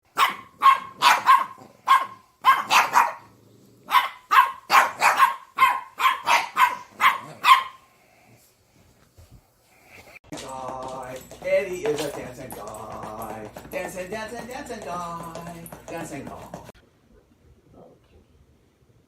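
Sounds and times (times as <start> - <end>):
dog barking: 0.1 - 3.3, 3.9 - 7.8.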